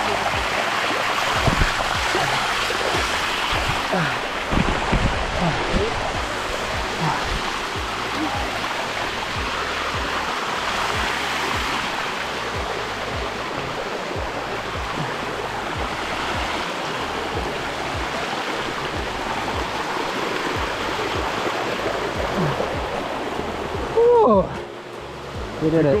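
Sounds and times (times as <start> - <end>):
music with low beat: 0.0 - 26.0
waterfall rushing: 0.0 - 26.0.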